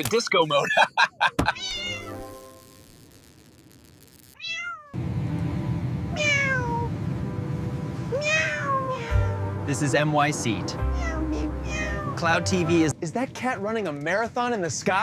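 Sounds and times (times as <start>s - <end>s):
cat meowing: 1.5s - 2.2s, 4.4s - 5.0s, 6.2s - 6.9s, 8.1s - 9.4s, 10.9s - 12.2s
background music: 8.8s - 13.6s.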